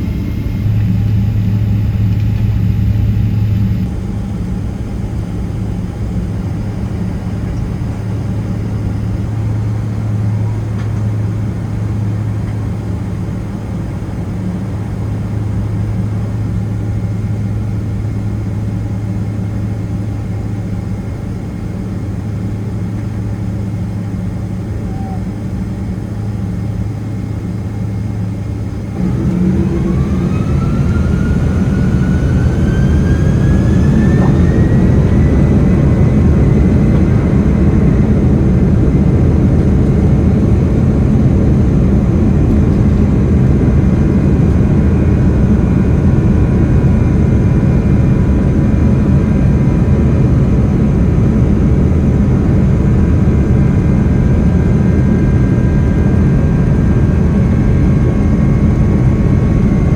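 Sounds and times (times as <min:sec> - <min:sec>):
jet engines spooling up: 0:00.0 - 0:11.8, 0:28.2 - 0:59.9
loud even rumble: 0:00.0 - 0:12.8, 0:28.8 - 0:59.9
rising engine whine: 0:00.0 - 0:59.9.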